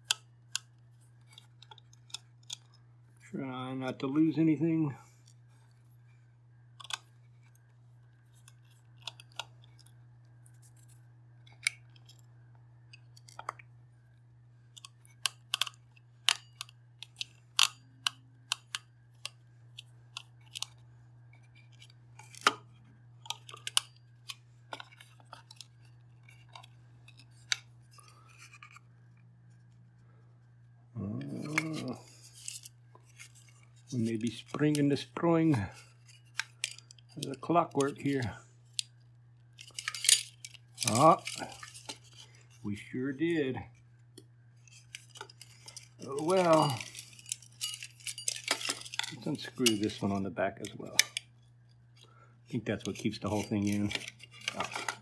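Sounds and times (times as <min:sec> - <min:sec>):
plastic parts clicking and tapping: 0:00.0 - 0:02.8, 0:06.8 - 0:07.6, 0:14.7 - 0:28.8, 0:52.8 - 0:55.0
steady low hum: 0:00.0 - 0:55.0.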